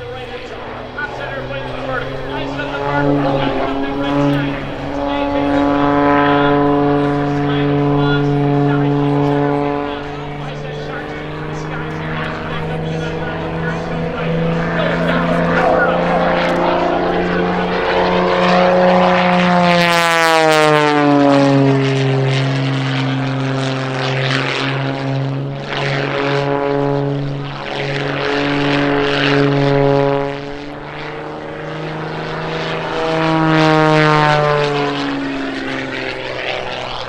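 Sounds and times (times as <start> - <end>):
propeller airplane flying past: 0.0 - 37.0.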